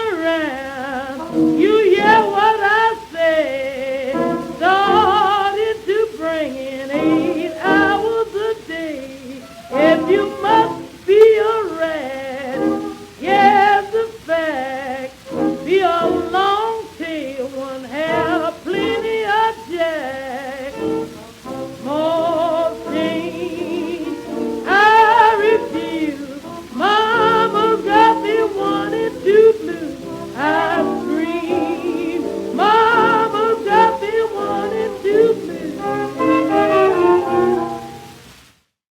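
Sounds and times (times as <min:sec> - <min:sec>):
record surface hiss: 0:00.0 - 0:38.8
small jazz band playing: 0:20.7 - 0:38.4.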